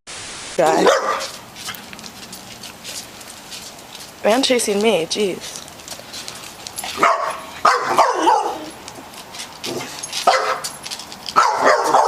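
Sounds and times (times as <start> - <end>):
dog barking: 0.8 - 1.4, 7.0 - 8.8, 10.2 - 10.7, 11.4 - 12.0.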